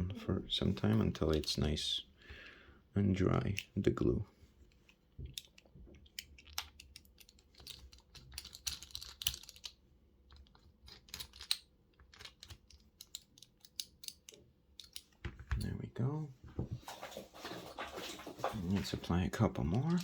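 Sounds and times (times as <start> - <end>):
small clamps clicking: 5.3 - 15.2.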